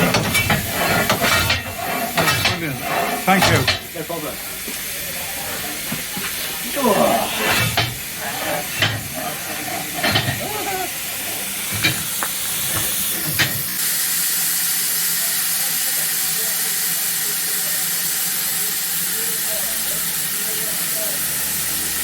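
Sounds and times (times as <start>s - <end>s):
sharp metal clanks: 0.0s - 4.0s, 7.2s - 10.7s, 11.7s - 13.7s
steam locomotive hissing: 0.0s - 22.0s.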